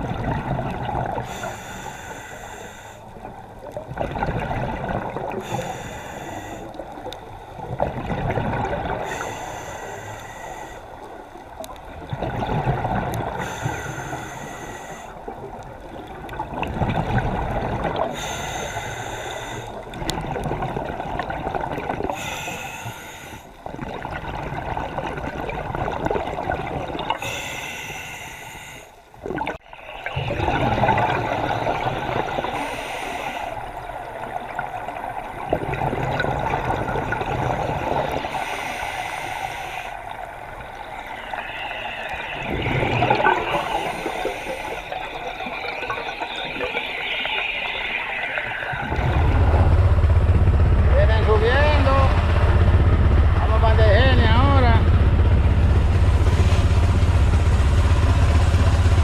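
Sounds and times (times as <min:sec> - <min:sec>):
water sloshing and gurgling: 0:00.0 - 0:59.0
breathing through a snorkel: 0:01.2 - 0:03.2, 0:05.3 - 0:06.9, 0:09.0 - 0:11.0, 0:13.3 - 0:15.4, 0:18.0 - 0:19.8, 0:22.0 - 0:23.6, 0:27.2 - 0:29.0, 0:32.4 - 0:33.8, 0:37.8 - 0:40.2, 0:42.4 - 0:45.2.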